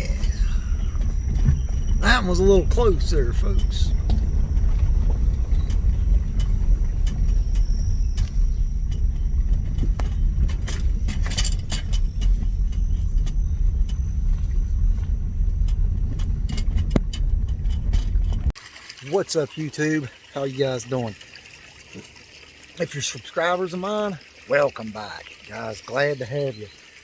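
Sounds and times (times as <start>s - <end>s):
road and engine rumble in car: 0.0s - 18.6s
small clicks and rattles: 5.5s - 18.5s.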